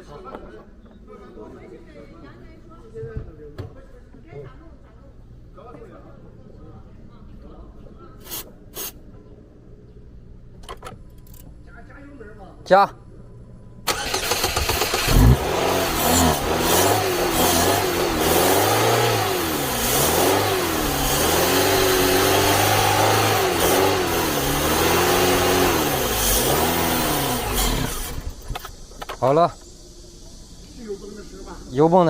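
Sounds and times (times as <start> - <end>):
car engine revving: 13.9 - 29.8.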